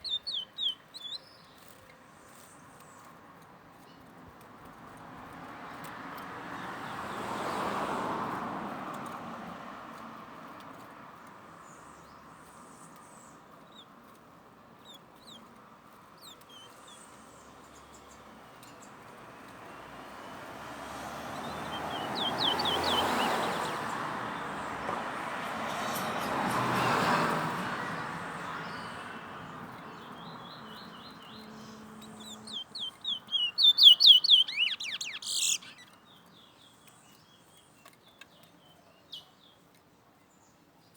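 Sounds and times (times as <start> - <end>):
bird short high chirps: 0.0 - 1.5, 21.4 - 23.8, 30.1 - 35.9
rushing background noise: 21.1 - 35.8.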